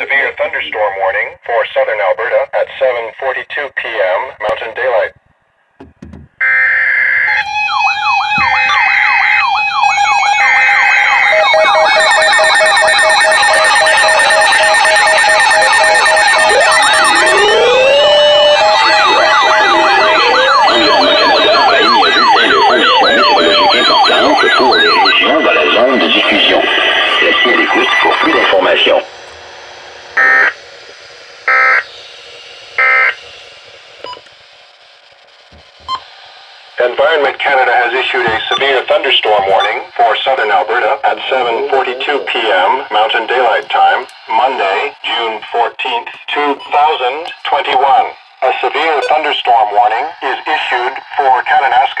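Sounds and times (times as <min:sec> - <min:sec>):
radio hiss: 0:00.0 - 0:05.2, 0:18.8 - 0:34.4, 0:36.8 - 0:52.0
steady electronic tone: 0:05.8 - 0:51.7
on-off tone: 0:05.8 - 0:52.0
emergency alert tones: 0:06.4 - 0:34.6, 0:35.3 - 0:36.2, 0:36.8 - 0:52.0
siren-like rising sweep: 0:06.4 - 0:39.9
fast pulsing beep: 0:10.2 - 0:17.7, 0:18.8 - 0:29.1, 0:30.2 - 0:30.6, 0:31.4 - 0:31.9, 0:32.8 - 0:33.2, 0:38.1 - 0:39.9, 0:48.8 - 0:49.6.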